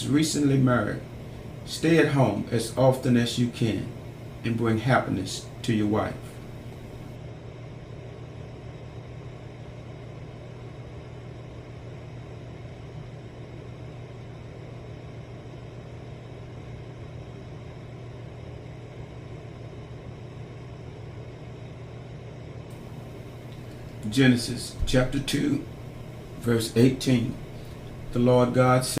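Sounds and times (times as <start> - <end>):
low rumbling hum: 0.0 - 7.2, 22.7 - 29.0.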